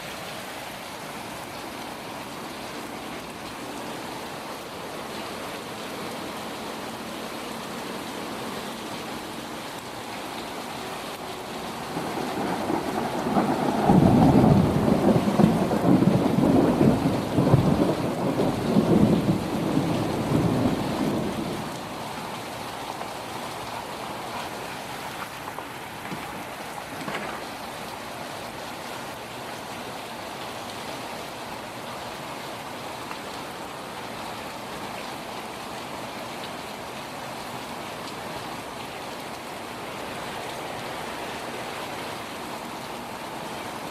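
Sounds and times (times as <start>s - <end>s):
steady rain: 0.0s - 43.9s
thunder rumbling: 11.6s - 22.4s.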